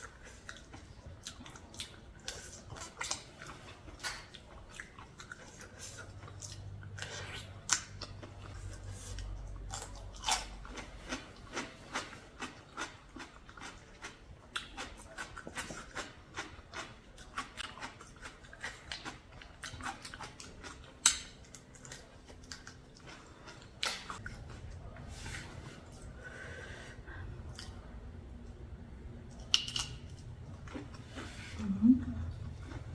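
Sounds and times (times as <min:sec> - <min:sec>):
chewing and crunching food: 0:00.0 - 0:26.2, 0:29.3 - 0:32.9.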